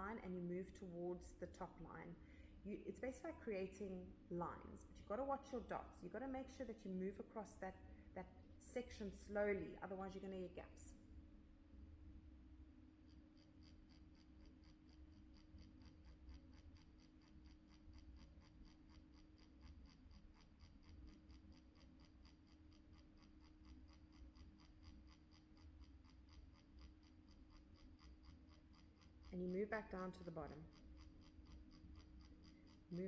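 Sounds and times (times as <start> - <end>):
needle scratching on skin: 13.0 - 33.0
makeup machine humming: 13.1 - 33.0.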